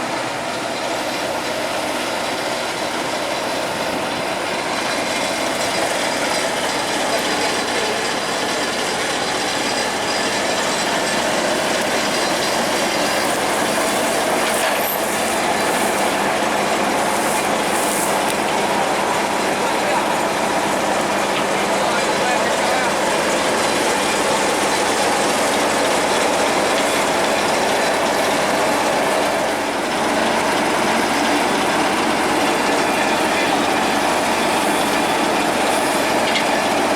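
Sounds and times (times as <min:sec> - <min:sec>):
heavy machinery running: 0:00.0 - 0:36.9.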